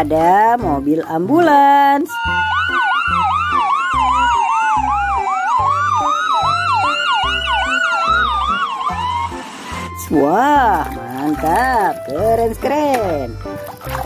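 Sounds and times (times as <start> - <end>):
ambulance siren: 2.0 - 12.0.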